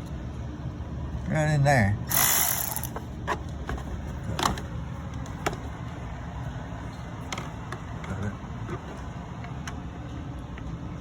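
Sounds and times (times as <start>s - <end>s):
electric ratchet spinning: 2.1s - 3.0s.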